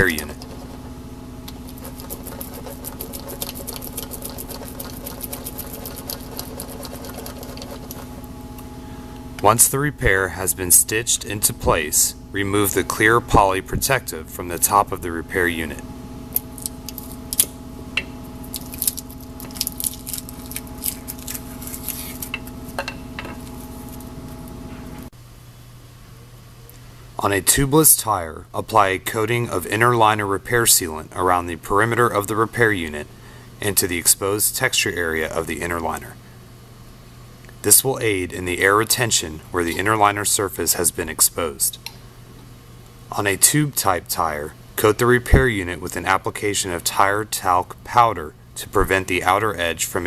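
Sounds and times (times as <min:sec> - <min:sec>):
steady low hum: 0:00.0 - 0:50.0
plastic film crackling as peeled: 0:18.5 - 0:22.4.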